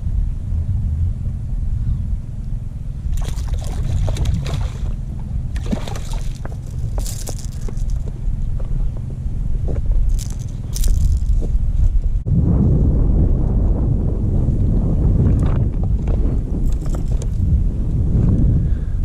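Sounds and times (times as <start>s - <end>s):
wind rumbling on microphone: 0.0s - 19.0s
fish splashing in water: 3.1s - 8.0s.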